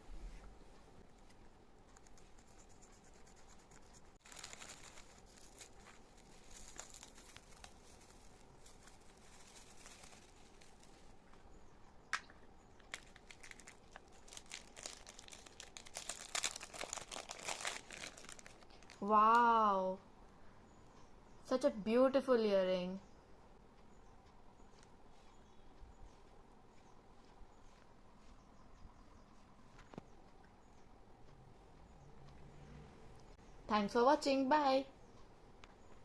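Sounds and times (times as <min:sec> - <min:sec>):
faint crackles: 0:00.1 - 0:19.5
packaging crinkling and tearing: 0:03.8 - 0:11.0, 0:12.9 - 0:19.1.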